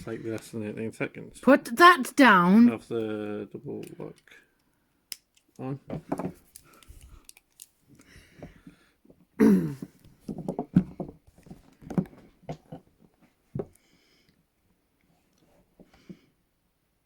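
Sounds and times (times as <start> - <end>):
wordless voice sounds: 1.5 - 2.7.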